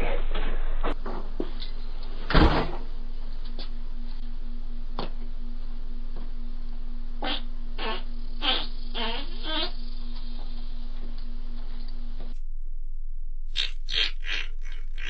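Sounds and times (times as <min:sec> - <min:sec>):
faint electrical hum: 0:00.0 - 0:15.0
bass-heavy fart: 0:07.2 - 0:11.0, 0:13.5 - 0:15.0.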